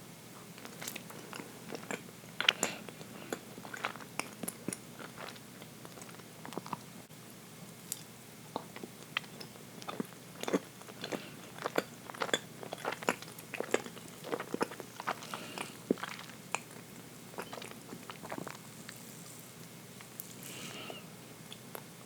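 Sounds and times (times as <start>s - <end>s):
wet chewing clicks and smacks: 0.6s - 6.9s, 8.5s - 19.0s.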